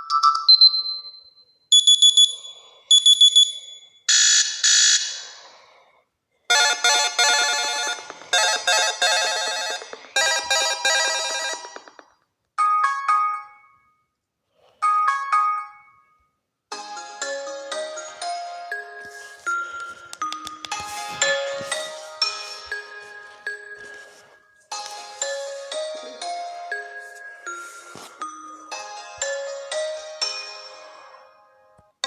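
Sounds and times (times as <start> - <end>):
tablet chime: 6.5 - 12.1.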